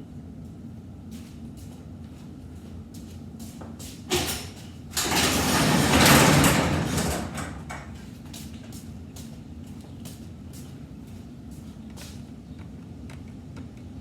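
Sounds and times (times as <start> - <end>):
sliding door whoosh: 5.0 - 7.6.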